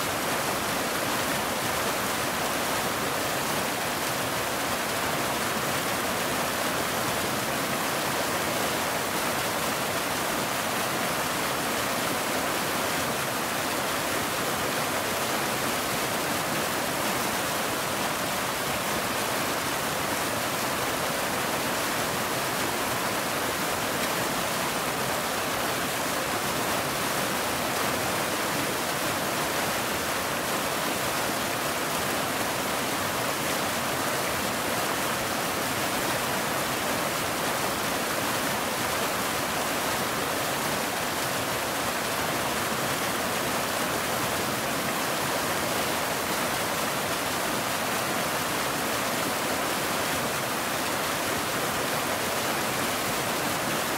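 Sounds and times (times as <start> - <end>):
waterfall rushing: 0.0 - 53.9.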